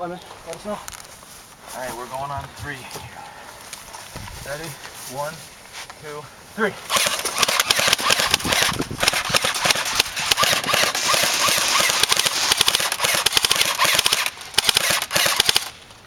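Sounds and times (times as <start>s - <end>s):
airsoft guns full-auto fire: 6.9s - 15.8s.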